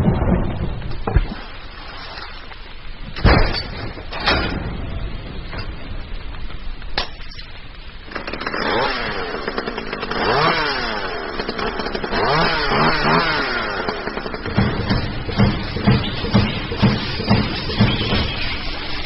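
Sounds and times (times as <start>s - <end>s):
low heavy pulses: 4.3s - 19.0s
engine revving: 8.1s - 17.3s.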